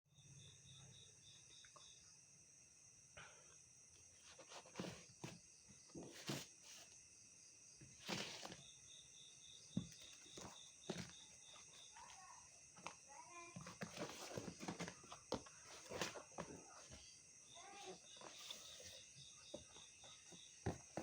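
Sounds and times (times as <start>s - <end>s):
fast pulsing insect chirp: 0.1s - 3.1s
insects chirping: 0.1s - 21.0s
rustles and knocks: 13.6s - 21.0s.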